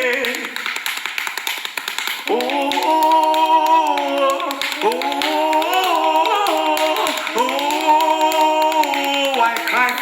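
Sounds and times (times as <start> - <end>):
hand clapping: 0.0 - 10.0
voices singing held notes: 2.3 - 10.0.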